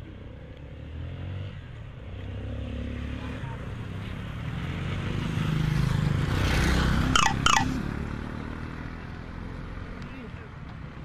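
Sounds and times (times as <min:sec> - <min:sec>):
high squeaky chirps: 0:07.2 - 0:07.7.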